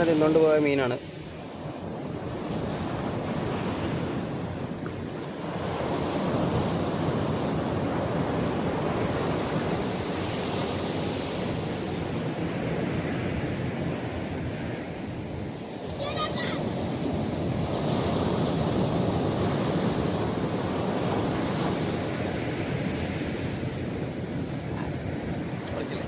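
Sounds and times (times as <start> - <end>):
surf washing onto beach: 0.0 - 26.0.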